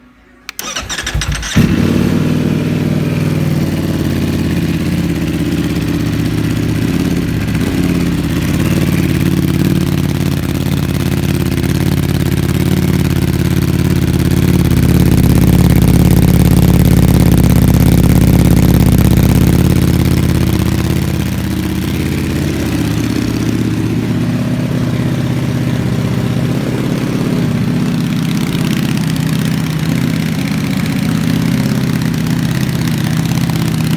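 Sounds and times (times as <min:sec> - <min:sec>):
motorcycle starter cranking: 0:00.5 - 0:02.2
motorcycle engine idling: 0:00.6 - 0:33.9.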